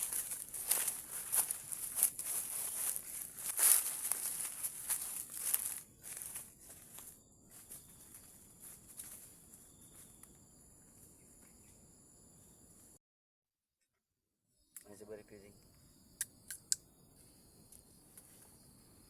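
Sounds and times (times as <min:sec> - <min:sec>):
rustling in undergrowth: 0:00.0 - 0:10.3
high-pitched insect drone: 0:00.0 - 0:13.0.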